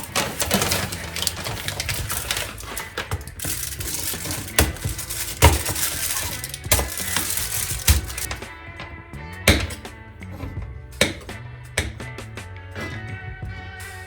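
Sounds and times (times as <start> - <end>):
knife chopping on cutting board: 11.0 - 12.2.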